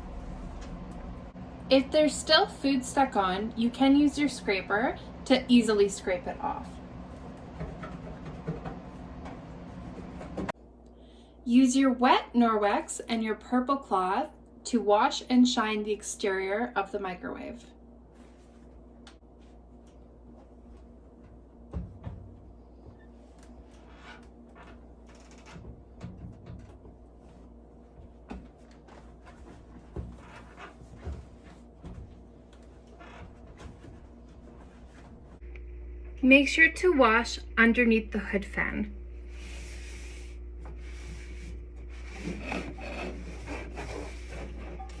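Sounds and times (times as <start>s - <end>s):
steady low hum: 0.0s - 45.0s
cloth wiping range hood: 28.9s - 35.4s.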